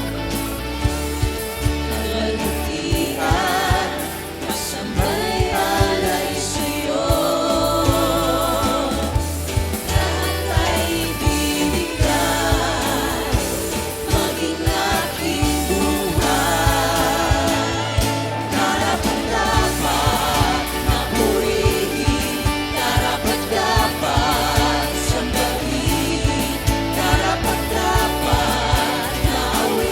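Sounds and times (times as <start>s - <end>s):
several voices singing: 0.0s - 29.9s
worship band playing: 0.0s - 29.9s.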